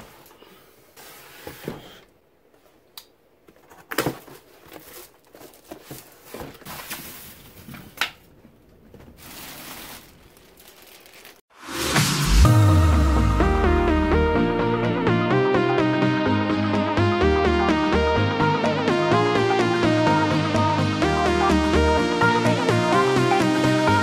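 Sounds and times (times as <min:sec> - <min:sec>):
packaging crinkling: 0:08.9 - 0:11.4.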